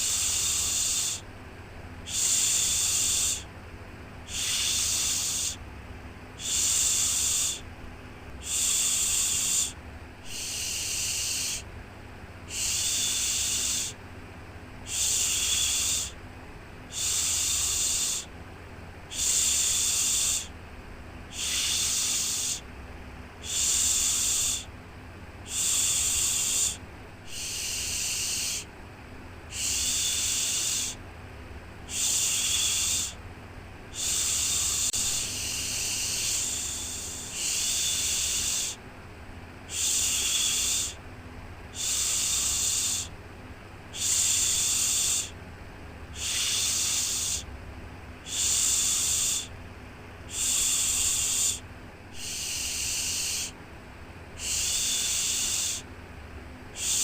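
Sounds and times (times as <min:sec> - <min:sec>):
faint low hum: 0:00.0 - 0:57.0
person shushing: 0:04.3 - 0:05.6, 0:08.4 - 0:11.6, 0:19.1 - 0:20.5, 0:21.3 - 0:22.6, 0:25.5 - 0:28.7, 0:29.5 - 0:31.0, 0:31.9 - 0:33.2, 0:34.0 - 0:38.8, 0:39.7 - 0:41.0, 0:44.0 - 0:45.4, 0:46.2 - 0:47.5, 0:48.3 - 0:49.5, 0:50.3 - 0:53.6, 0:54.4 - 0:55.8, 0:56.8 - 0:57.0.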